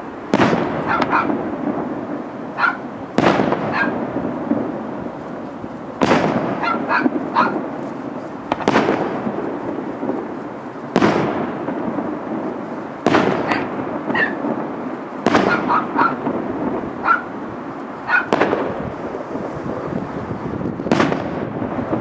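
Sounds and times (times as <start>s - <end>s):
firework shells bursting: 0.0s - 22.0s
rumbling echo: 0.0s - 22.0s.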